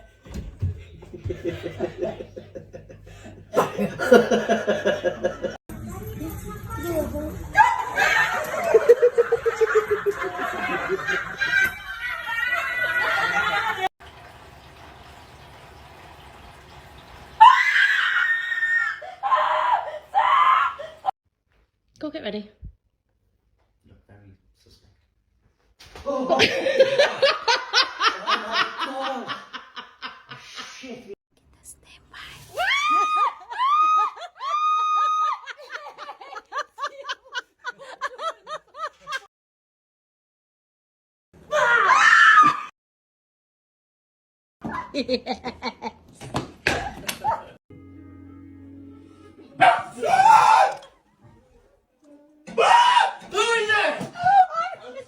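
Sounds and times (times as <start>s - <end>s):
person screaming: 49.8s - 50.9s, 52.5s - 53.7s.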